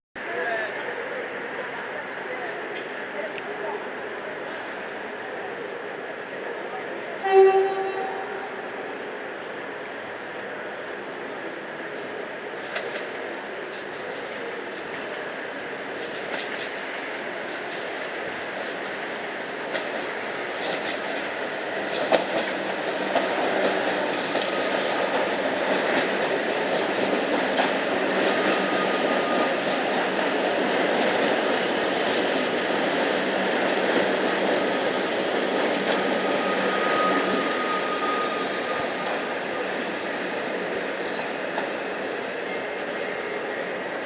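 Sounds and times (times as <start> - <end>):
electric train on rails: 0.2 - 44.0
faint wheel squeal: 36.0 - 40.2.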